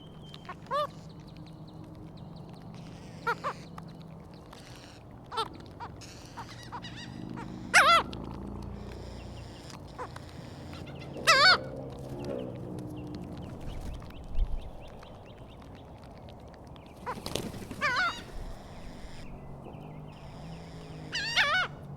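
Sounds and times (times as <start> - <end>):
seagulls calling: 0.0 - 21.9.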